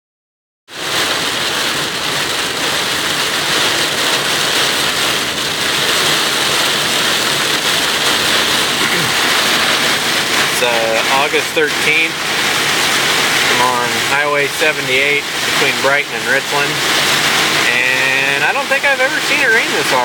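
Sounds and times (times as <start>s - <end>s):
heavy rain on car roof: 0.7s - 20.0s.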